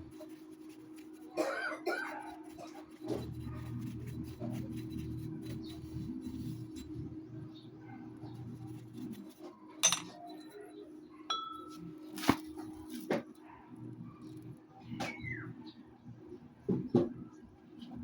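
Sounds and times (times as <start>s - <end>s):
metal tools clinking: 9.8s - 10.6s.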